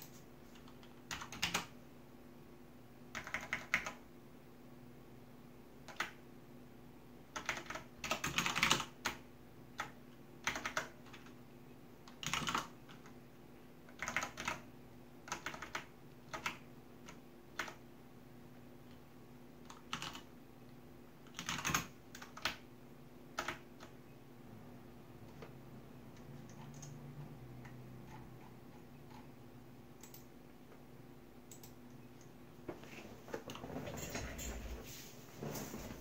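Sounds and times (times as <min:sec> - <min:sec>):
keyboard typing: 0:00.0 - 0:01.8, 0:03.1 - 0:04.0, 0:05.8 - 0:06.2, 0:07.3 - 0:09.2, 0:09.8 - 0:11.4, 0:12.0 - 0:13.2, 0:13.9 - 0:14.6, 0:15.2 - 0:17.8, 0:19.6 - 0:20.3, 0:21.2 - 0:22.6, 0:23.3 - 0:24.0, 0:25.3 - 0:30.8, 0:31.5 - 0:32.4
faint steady hum: 0:00.0 - 0:36.0.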